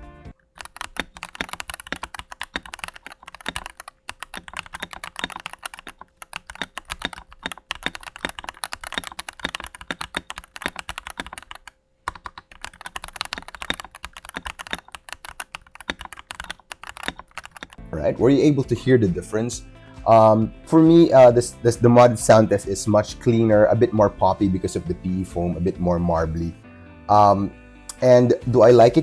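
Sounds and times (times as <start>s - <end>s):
mechanical keyboard typing: 0.5s - 17.8s.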